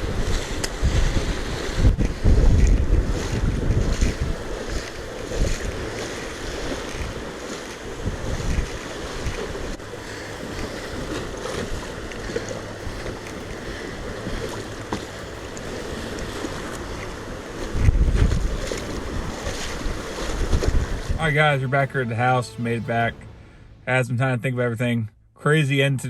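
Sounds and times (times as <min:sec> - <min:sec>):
wind gusting across microphone: 0:00.0 - 0:22.3
choppy waves: 0:00.0 - 0:24.4.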